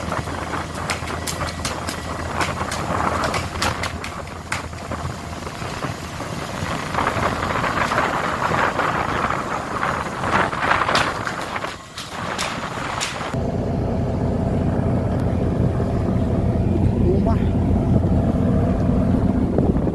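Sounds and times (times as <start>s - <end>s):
sea noise: 0.0s - 13.4s
boat engine running: 0.0s - 19.9s
wind: 0.0s - 19.9s.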